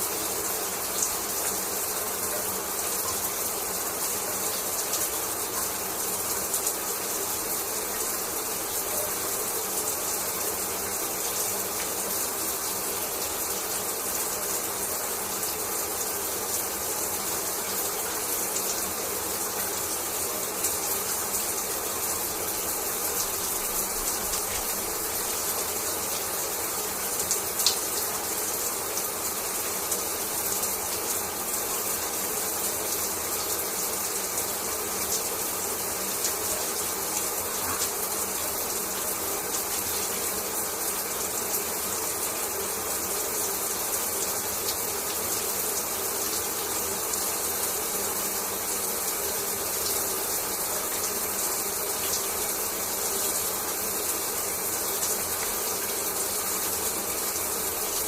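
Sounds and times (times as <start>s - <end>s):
shower water spraying: 0.0s - 58.0s
water splashes and drips: 0.0s - 58.0s.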